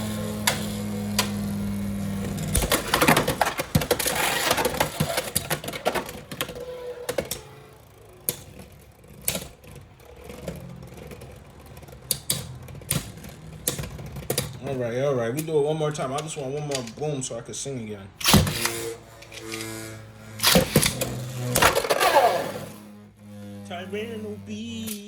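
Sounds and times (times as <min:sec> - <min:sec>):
tops rattling clatter: 0:00.1 - 0:17.3, 0:20.3 - 0:24.2
spinning tops humming: 0:18.6 - 0:24.9.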